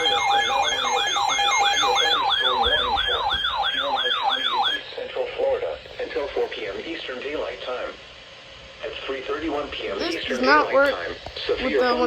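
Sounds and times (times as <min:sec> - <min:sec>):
sweeping electronic alert tone: 0:00.0 - 0:04.8.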